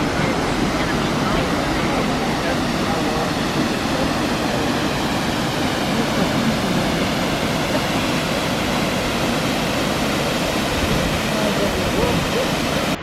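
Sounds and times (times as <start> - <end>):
waterfall roaring: 0.0 - 13.0.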